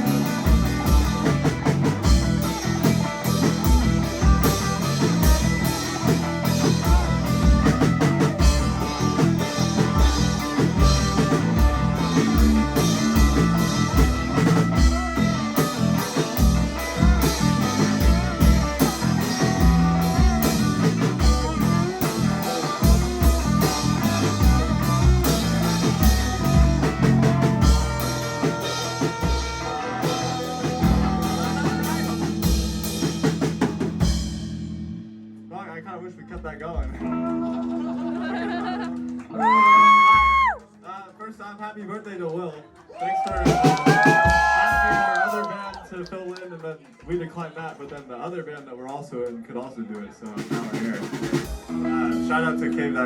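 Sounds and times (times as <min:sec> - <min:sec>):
drum kit: 0:00.0 - 0:35.0, 0:43.0 - 0:45.6, 0:50.3 - 0:52.4
distorted electric guitar: 0:00.0 - 0:35.5, 0:50.4 - 0:53.0.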